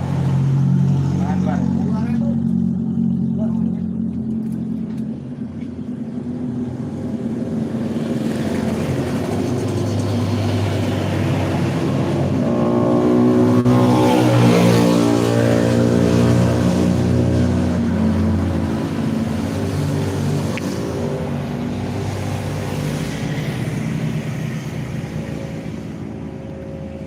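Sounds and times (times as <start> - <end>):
bus engine passing: 0.0 - 27.0.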